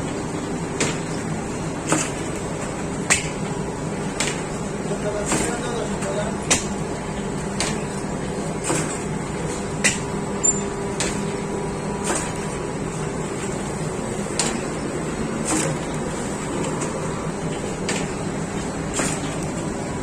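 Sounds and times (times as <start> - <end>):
bakery machinery humming: 0.0 - 20.0.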